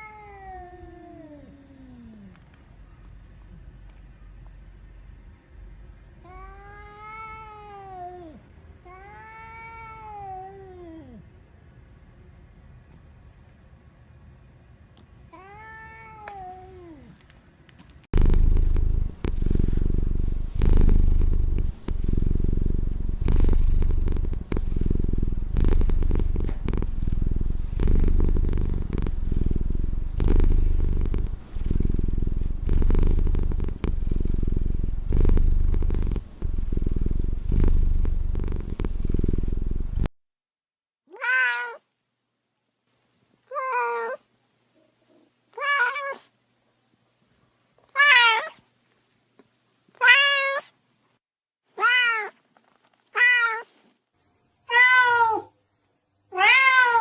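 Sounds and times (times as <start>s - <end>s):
cat meowing: 0.0s - 1.5s, 6.3s - 11.2s, 41.1s - 41.9s, 43.5s - 44.2s, 45.6s - 46.3s, 47.9s - 48.6s, 50.0s - 50.7s, 51.8s - 52.4s, 53.2s - 53.7s, 54.7s - 55.5s, 56.3s - 57.0s
cat purring loudly: 18.1s - 40.1s.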